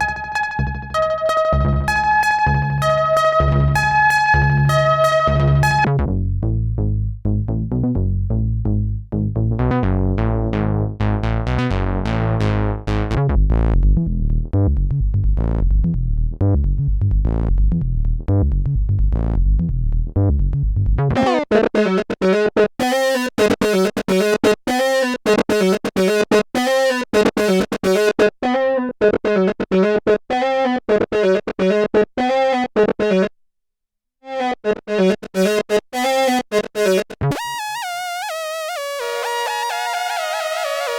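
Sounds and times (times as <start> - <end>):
staccato synthesizer notes: 0.0 - 6.0, 20.5 - 28.3, 34.8 - 37.6
synthesizer bass line: 0.0 - 21.6, 35.4 - 40.9.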